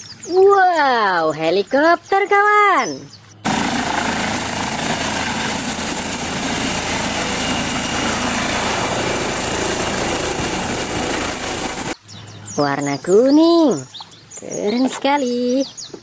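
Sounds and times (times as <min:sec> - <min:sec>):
helicopter rotor and engine: 0:03.4 - 0:12.0.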